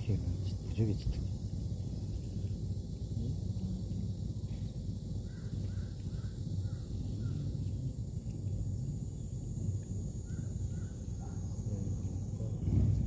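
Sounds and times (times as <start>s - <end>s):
steady low rumble: 0.0s - 13.0s
bird calling: 5.2s - 7.6s, 10.2s - 11.5s.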